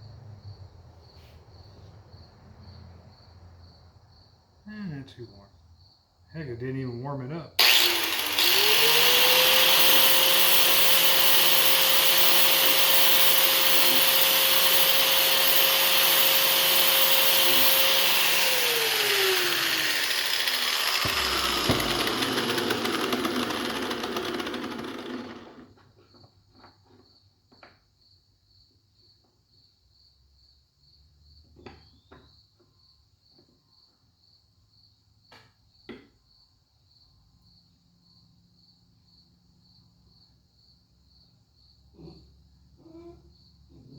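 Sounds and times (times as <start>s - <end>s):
crickets chirping: 0.0s - 6.3s
sanding disc grinding metal: 7.6s - 24.9s
angle grinder motor: 7.6s - 25.7s.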